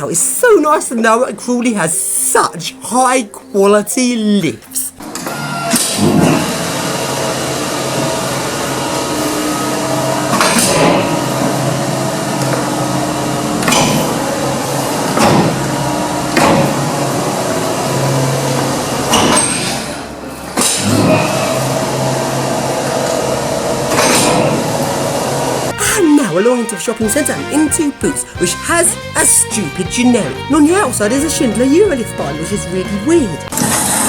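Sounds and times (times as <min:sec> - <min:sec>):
lift motor hum: 0:05.0 - 0:25.7.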